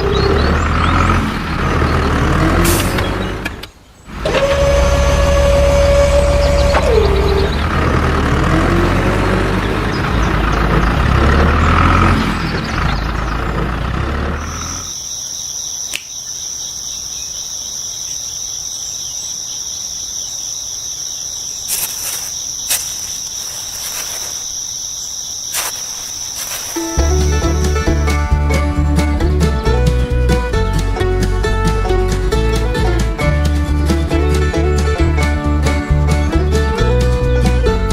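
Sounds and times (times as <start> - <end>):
truck engine running: 0.0 - 15.0, 21.7 - 24.6, 25.5 - 37.9
high-pitched insect chirring: 14.9 - 27.8.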